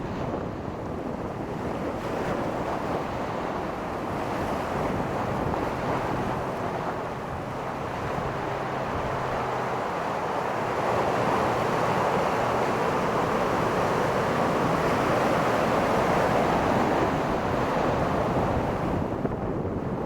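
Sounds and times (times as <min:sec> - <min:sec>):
ocean surf breaking: 0:00.0 - 0:20.0
wind buffeting microphone: 0:00.0 - 0:20.0.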